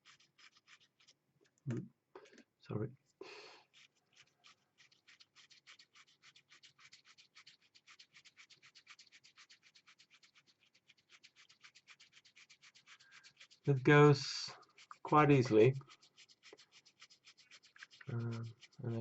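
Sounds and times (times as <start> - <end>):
scratchy rub: 0.0 - 1.2, 3.2 - 19.0.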